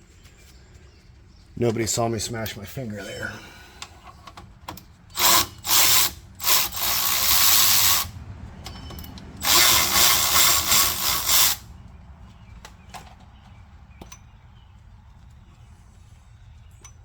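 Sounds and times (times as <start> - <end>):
cordless power tool running: 5.2 - 8.1, 9.4 - 11.6.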